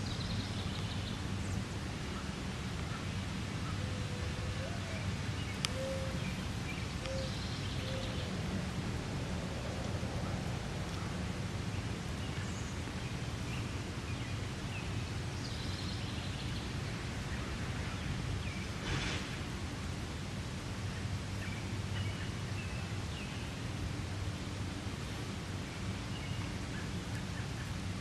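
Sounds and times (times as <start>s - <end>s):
brief rustle: 18.8s - 19.4s.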